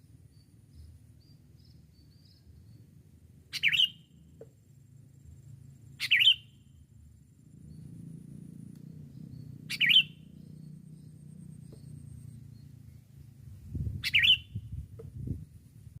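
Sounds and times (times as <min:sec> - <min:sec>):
low steady rumble: 0:00.0 - 0:16.0
bird bubbly wavering calls: 0:09.7 - 0:10.2, 0:14.0 - 0:14.5.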